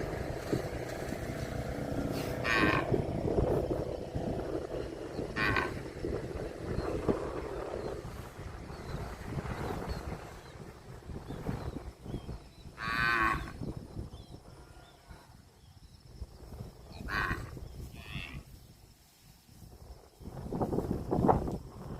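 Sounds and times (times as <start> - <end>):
cattle mooing: 0.0 - 3.0, 5.2 - 5.9, 12.8 - 13.6, 17.0 - 18.4.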